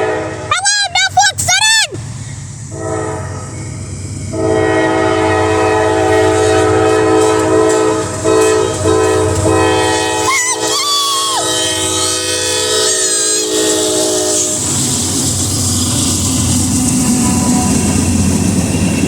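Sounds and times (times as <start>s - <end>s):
locomotive air horn chord: 0.0s - 0.5s, 2.7s - 3.7s, 4.3s - 14.8s
low rumble of train: 0.0s - 19.0s.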